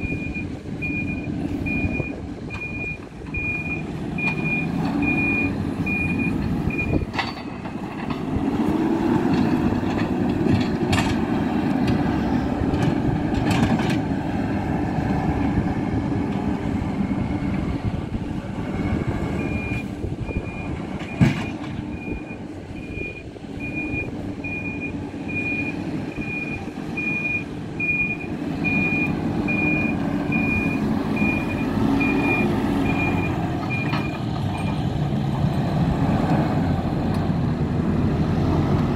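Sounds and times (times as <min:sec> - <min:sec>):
reversing alarm beeping: 0:00.0 - 0:07.0, 0:19.4 - 0:34.2
backhoe diesel engine running: 0:00.0 - 0:38.9.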